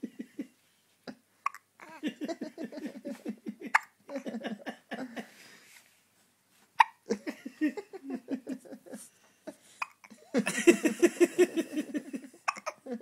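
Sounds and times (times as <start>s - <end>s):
person hiccuping: 12.5s - 12.8s.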